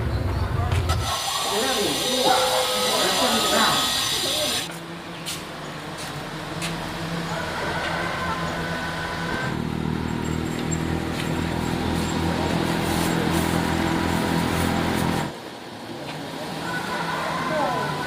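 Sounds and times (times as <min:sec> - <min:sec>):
engine running: 0:00.0 - 0:18.0.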